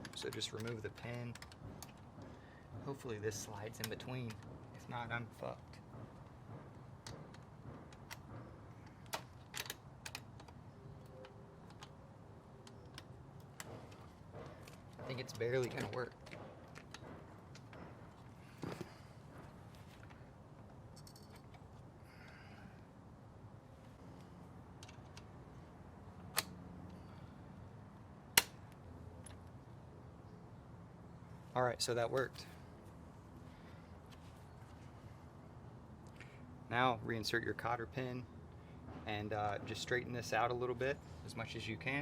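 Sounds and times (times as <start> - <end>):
light metallic clicks and taps: 0.0 - 3.0.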